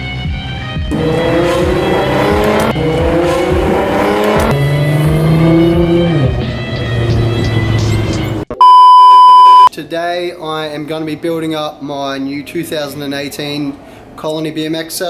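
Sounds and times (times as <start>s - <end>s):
car engine revving: 0.9s - 8.5s.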